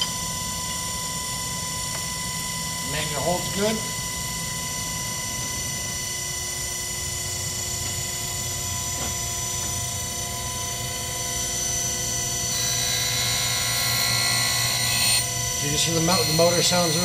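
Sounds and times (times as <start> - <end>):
surface grinder motor humming: 8.8 - 17.0
grinding wheel hiss: 12.5 - 17.0.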